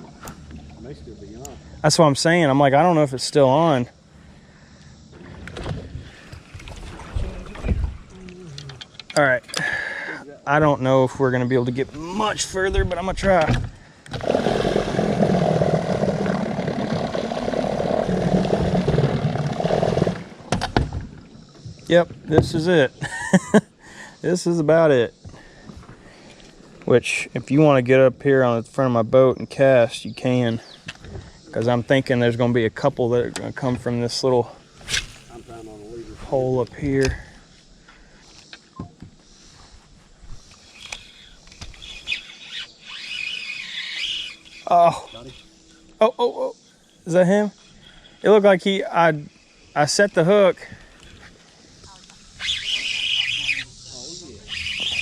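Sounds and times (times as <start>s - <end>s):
bird squealing and chirping: 40.7s - 45.6s, 52.3s - 53.8s, 54.4s - 55.0s.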